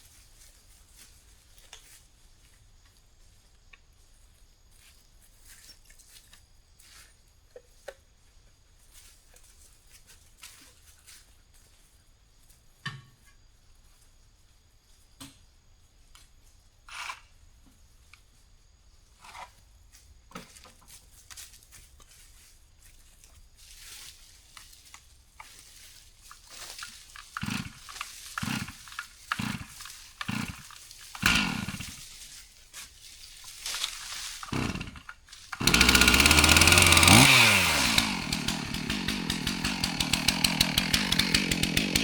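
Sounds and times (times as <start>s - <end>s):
chainsaw starter cord tugs: 26.3s - 32.4s, 33.7s - 42.0s
chainsaw engine coughing: 27.4s - 27.8s, 28.4s - 28.8s, 29.4s - 31.9s, 34.5s - 42.0s.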